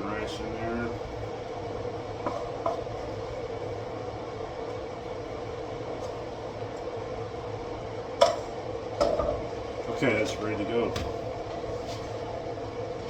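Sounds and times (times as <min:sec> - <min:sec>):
steady mechanical hum: 0:00.0 - 0:13.0.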